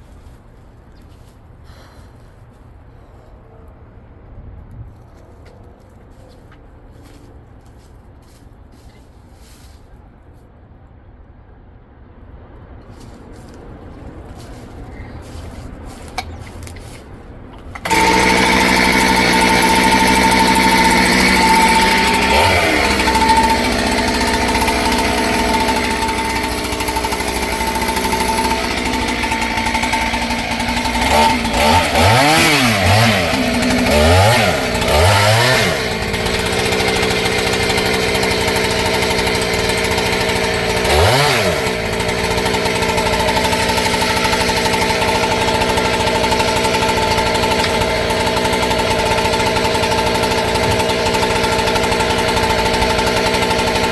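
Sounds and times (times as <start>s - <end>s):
chainsaw running at high revs: 17.6s - 53.9s.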